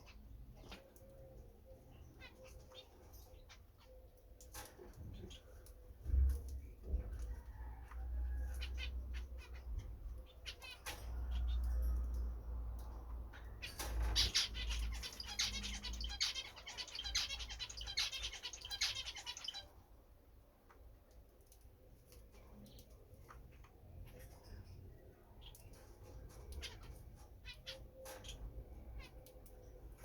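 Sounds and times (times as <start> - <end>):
finches chirping and twittering: 0.0 - 7.2, 8.5 - 19.8, 21.7 - 30.0.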